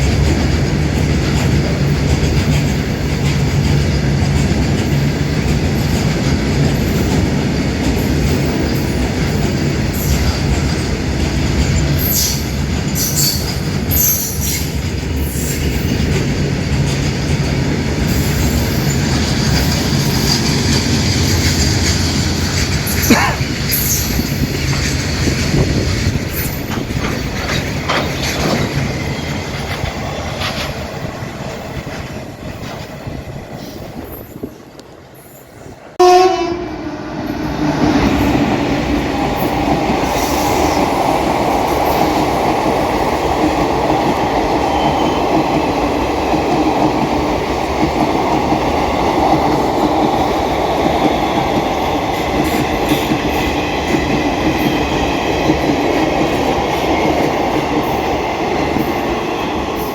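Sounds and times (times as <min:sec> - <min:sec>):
train running past: 0:00.0 - 0:59.9
train horn: 0:36.0 - 0:37.3.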